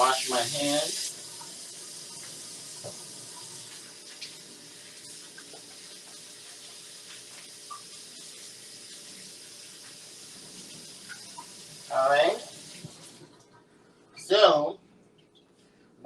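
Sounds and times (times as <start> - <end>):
tap running: 2.1 - 4.4, 5.0 - 7.9.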